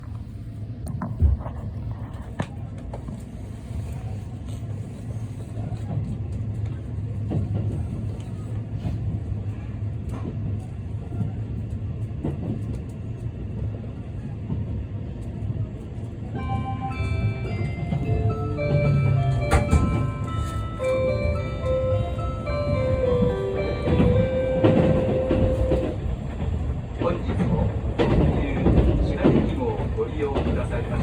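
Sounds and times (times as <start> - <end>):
train running rumble: 0.0 - 31.0
bell-like announcement chime: 16.4 - 25.9.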